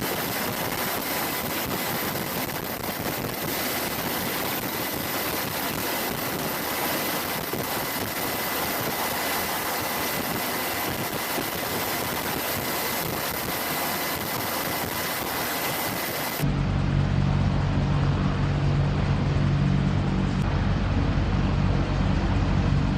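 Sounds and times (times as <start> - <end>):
helicopter turbines and rotor wash: 0.0 - 22.9
high whine: 0.0 - 22.9
deep droning hum: 16.4 - 22.9.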